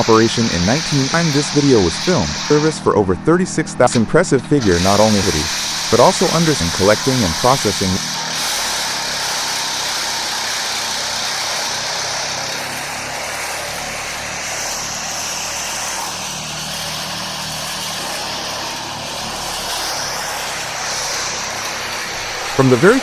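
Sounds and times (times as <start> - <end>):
wood chipper running: 0.0 - 23.0.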